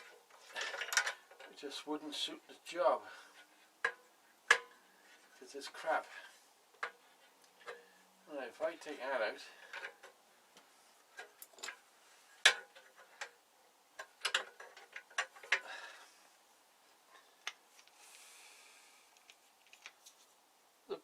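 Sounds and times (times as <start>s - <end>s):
small metal parts clicking: 0.0s - 1.6s, 11.2s - 11.8s
faint soft hiss: 0.0s - 21.0s.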